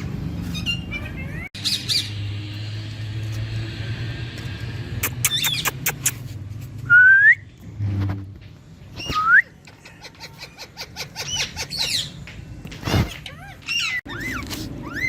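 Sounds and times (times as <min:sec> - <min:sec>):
parrots chirping: 0:00.4 - 0:02.5, 0:05.0 - 0:06.3, 0:08.9 - 0:15.0.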